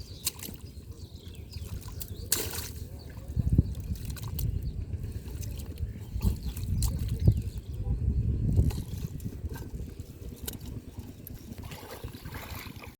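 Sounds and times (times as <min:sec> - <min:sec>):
river water splashing: 0:00.0 - 0:04.4, 0:09.5 - 0:12.9.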